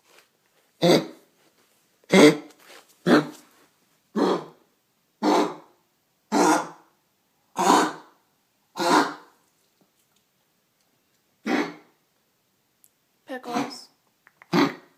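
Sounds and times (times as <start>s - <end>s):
pet coughing: 7.6s - 8.1s, 8.8s - 9.3s, 11.4s - 11.9s.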